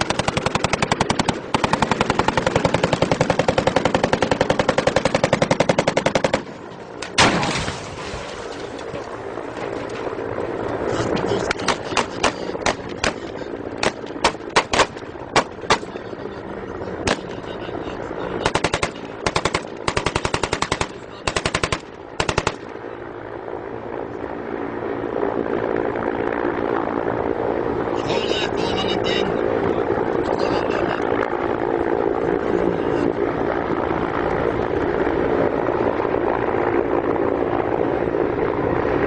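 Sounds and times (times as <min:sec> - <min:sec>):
automatic gunfire bursts: 0:00.0 - 0:06.5, 0:13.8 - 0:15.9, 0:18.4 - 0:22.7
single gunshots: 0:07.0 - 0:08.4, 0:13.8 - 0:15.9, 0:18.4 - 0:22.6.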